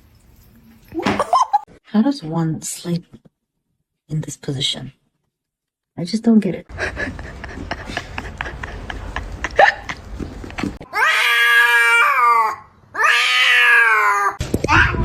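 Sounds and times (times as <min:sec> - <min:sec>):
cat meowing: 0:10.9 - 0:15.0.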